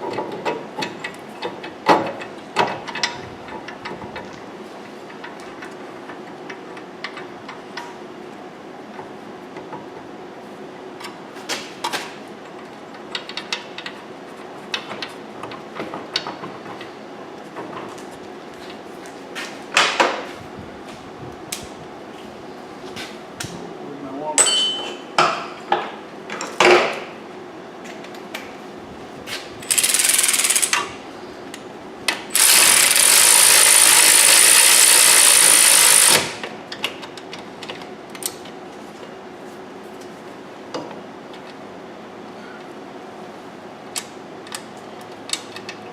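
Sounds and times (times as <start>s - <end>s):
metal tools clinking on car hub: 24.4s - 25.0s.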